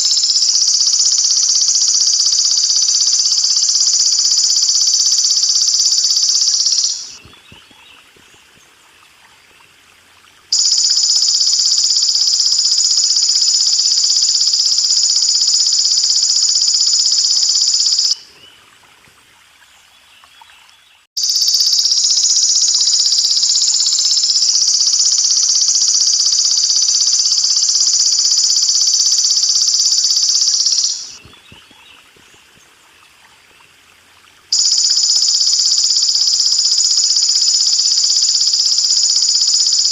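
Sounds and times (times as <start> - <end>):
grasshopper buzzing trill: 0.0 - 7.2, 10.5 - 18.2, 21.2 - 31.2, 34.5 - 39.9
faint water trickle: 3.0 - 21.1, 31.2 - 35.0.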